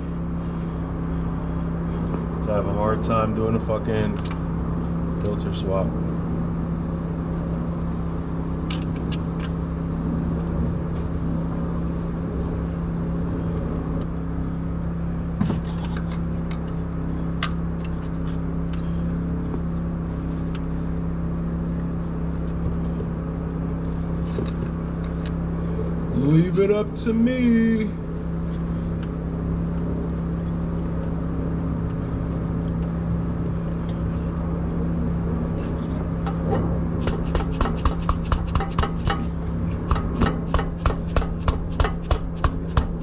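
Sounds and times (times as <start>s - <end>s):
low mechanical hum: 0.0s - 43.0s
hand tools clicking and knocking: 36.3s - 43.0s.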